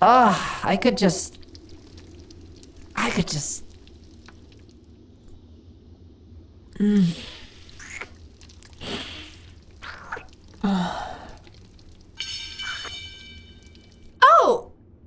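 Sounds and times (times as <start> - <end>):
woman humming: 6.8 - 8.1, 8.8 - 11.5, 14.2 - 14.7
wet kissing lip smacks: 6.8 - 10.3.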